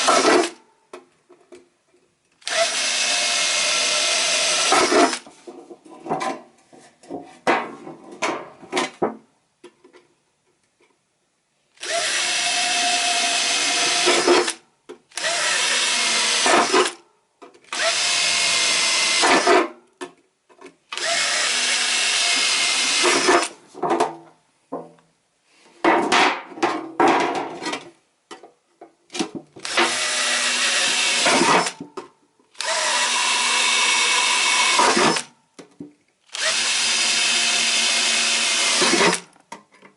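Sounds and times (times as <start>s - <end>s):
electric drill boring into metal can: 2.4s - 5.2s, 11.8s - 14.6s, 15.2s - 17.0s, 17.7s - 19.6s, 21.0s - 23.5s, 29.6s - 31.8s, 32.6s - 35.3s, 36.3s - 39.2s.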